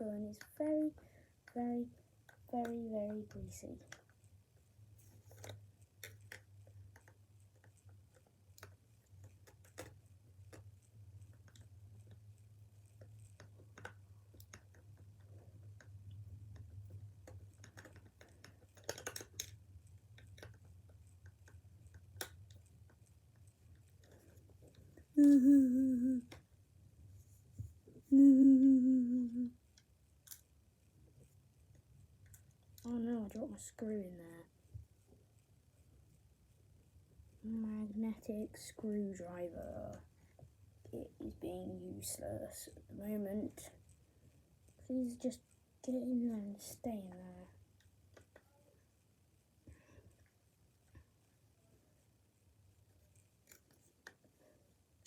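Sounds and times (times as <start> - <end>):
low steady hum: 0.0 - 55.0
plastic parts clicking: 17.3 - 19.6
person humming: 25.2 - 26.4, 28.0 - 29.6.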